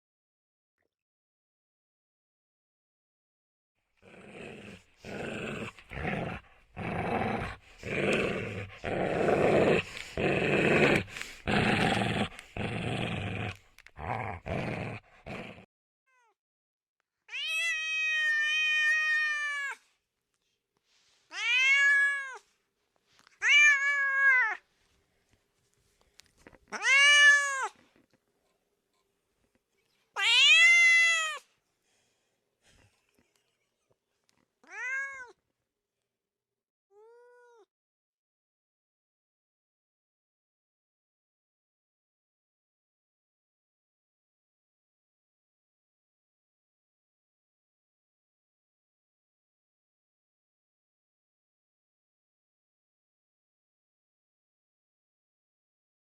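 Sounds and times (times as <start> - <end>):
animal growling calls: 4.0 - 15.7
cat meowing: 17.3 - 19.8, 21.3 - 22.4, 23.4 - 24.6, 26.7 - 27.8, 30.2 - 31.5, 34.6 - 35.4, 37.0 - 37.7.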